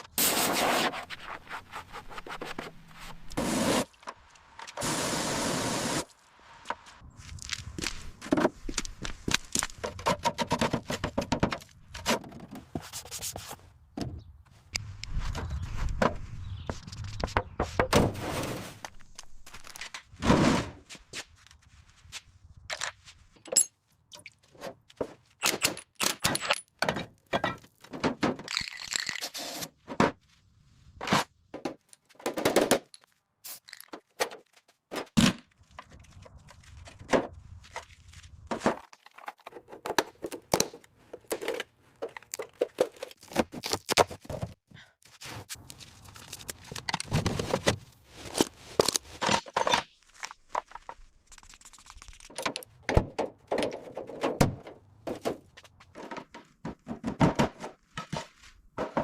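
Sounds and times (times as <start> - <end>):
knocks and scrapes of repair work: 9.5 - 14.8, 52.3 - 59.0.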